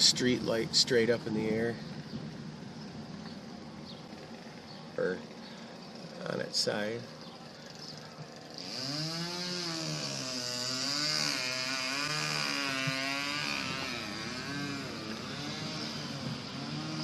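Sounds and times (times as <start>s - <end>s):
engine running and revving: 7.2s - 17.0s.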